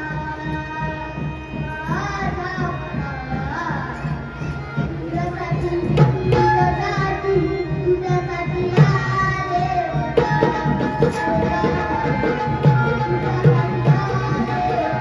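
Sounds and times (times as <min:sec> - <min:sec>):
tabla strokes: 0:08.7 - 0:15.0.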